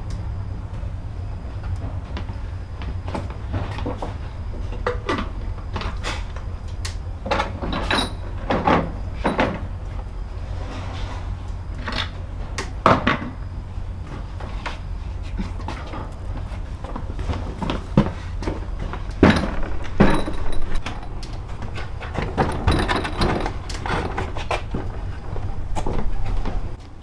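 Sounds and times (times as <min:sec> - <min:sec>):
knocks and clacks: 0:17.7 - 0:26.8.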